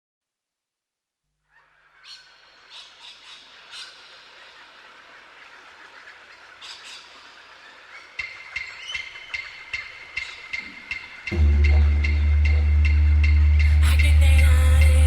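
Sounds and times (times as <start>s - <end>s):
bird squawks: 1.5s - 15.0s
clicking wood-block beat: 10.2s - 15.0s
didgeridoo music: 10.4s - 15.0s.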